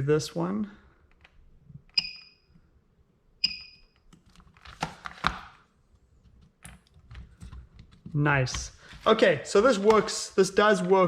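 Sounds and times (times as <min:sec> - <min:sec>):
scraping and handling noise: 0:04.1 - 0:11.0.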